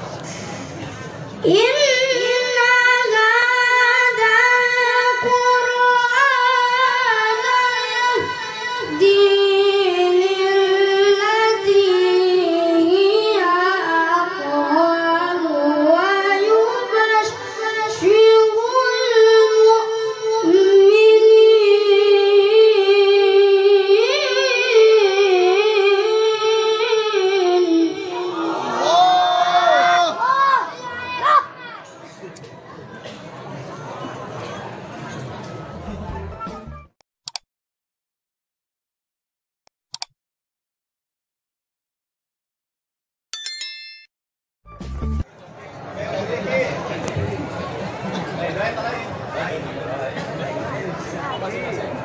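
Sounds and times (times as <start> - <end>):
high voice singing unaccompanied: 1.4 - 29.0.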